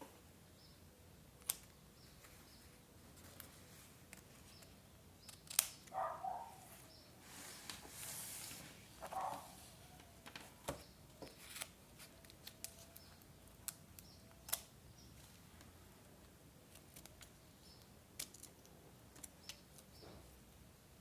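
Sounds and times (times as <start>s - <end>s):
paper and tools clicking: 4.1s - 6.0s, 11.2s - 14.7s, 16.7s - 19.9s.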